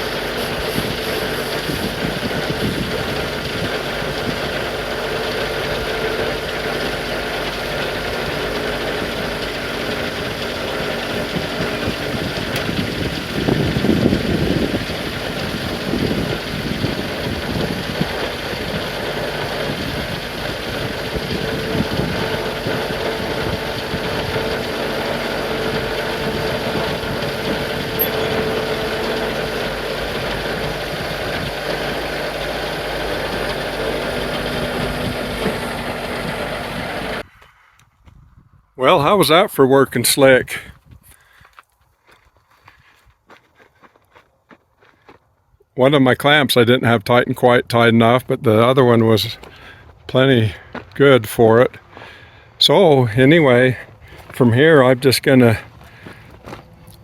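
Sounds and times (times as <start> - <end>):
tractor engine running: 0.0 - 37.3, 45.8 - 57.0.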